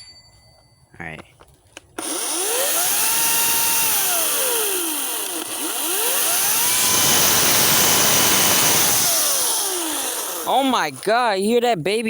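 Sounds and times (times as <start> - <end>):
electric chainsaw motor whine: 2.0 - 11.2.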